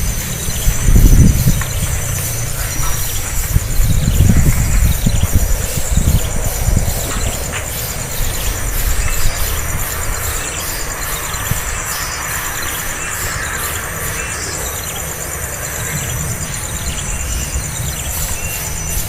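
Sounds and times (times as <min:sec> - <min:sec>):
high-pitched pulsing insect drone: 0:00.0 - 0:19.0.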